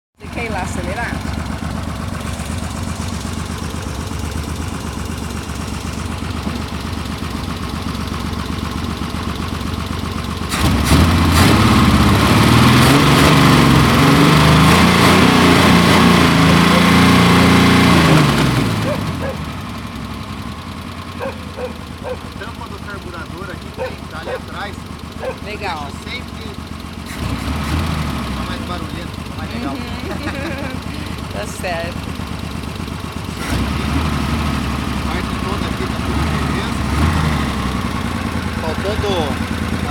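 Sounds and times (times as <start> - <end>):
car engine idling and revving: 0.2 - 39.9.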